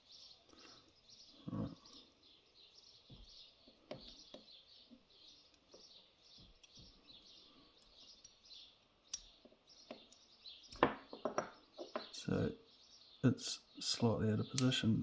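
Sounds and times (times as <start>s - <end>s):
faint bird chirping: 0.0s - 15.0s
small lock parts clicking: 6.4s - 7.0s, 9.1s - 12.1s.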